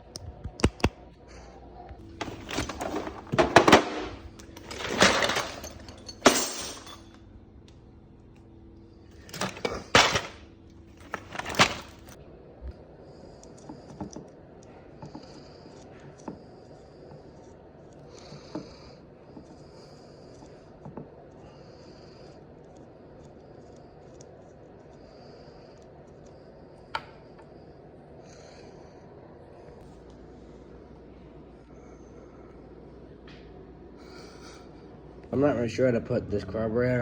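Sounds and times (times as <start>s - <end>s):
loud clattering: 2.1s - 7.1s, 9.2s - 10.4s, 11.0s - 12.2s.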